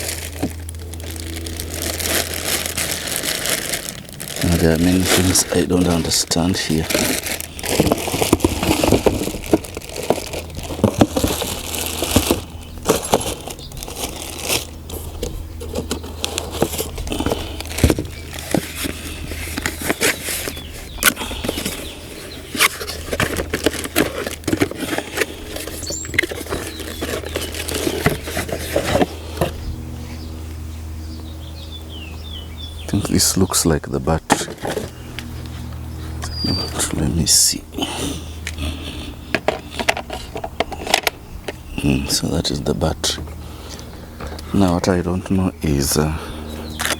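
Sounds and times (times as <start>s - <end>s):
packaging rustling and crinkling: 0.0s - 29.6s, 34.3s - 35.5s
steady low hum: 0.0s - 46.9s.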